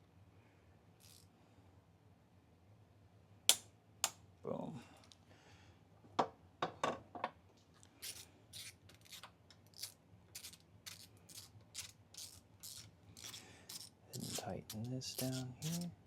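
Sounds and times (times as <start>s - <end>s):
ratchet wrench rasping: 1.0s - 1.2s, 9.8s - 16.0s.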